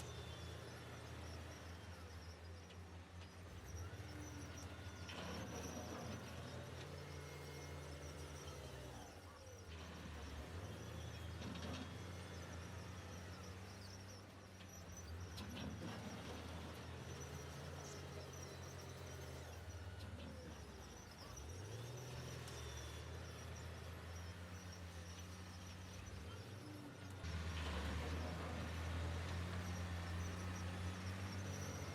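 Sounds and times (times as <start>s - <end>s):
diesel engine of heavy machinery: 0.0s - 31.9s.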